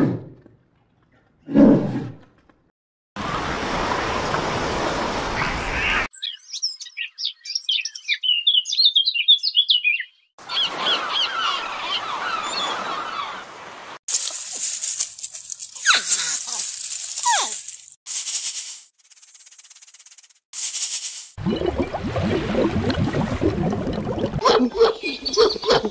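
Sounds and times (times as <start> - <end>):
songbirds chirping: 5.4 - 13.9, 24.5 - 25.9.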